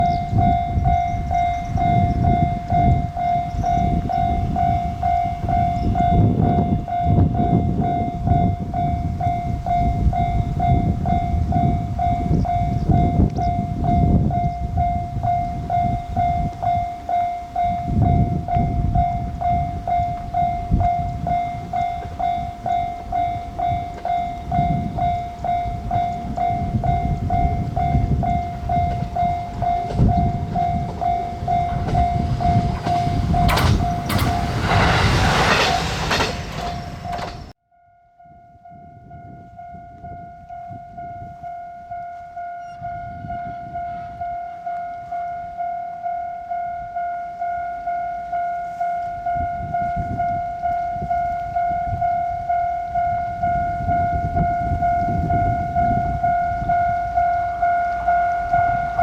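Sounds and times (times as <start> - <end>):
level-crossing bell clanging: 0.0 - 37.6, 38.3 - 59.0
train rumbling past: 0.0 - 37.6, 39.5 - 59.0.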